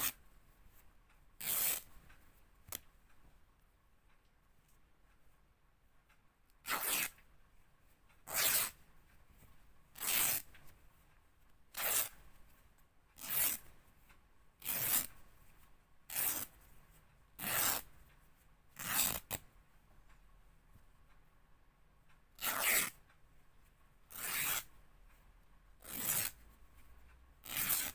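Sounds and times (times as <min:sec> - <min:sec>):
fabric ripping: 0:06.7 - 0:07.1, 0:25.8 - 0:26.4.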